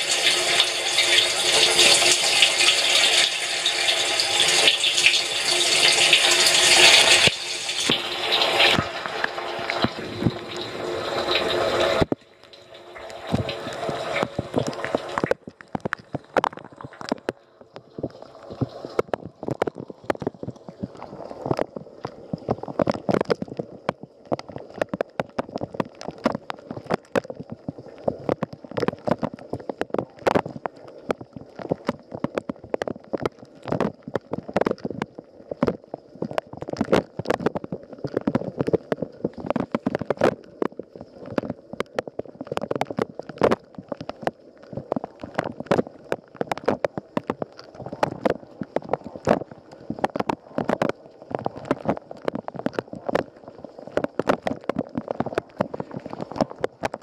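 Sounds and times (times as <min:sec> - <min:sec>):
dishwasher water gurgling: 0:00.0 - 0:57.0.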